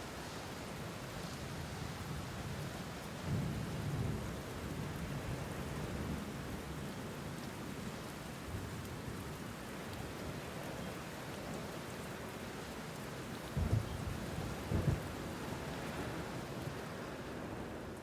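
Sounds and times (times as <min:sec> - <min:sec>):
low rumbles of thunder: 0:13.5 - 0:15.8.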